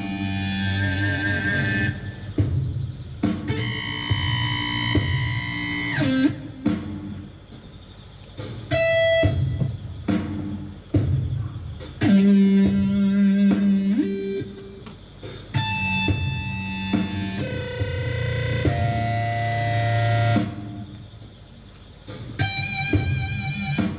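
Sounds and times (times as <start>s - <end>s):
electric guitar notes: 15.6s - 20.8s.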